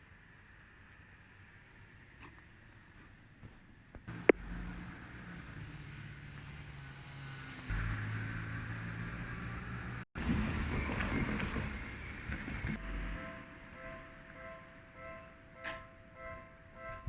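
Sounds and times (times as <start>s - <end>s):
vehicle low hum: 4.0s - 15.2s.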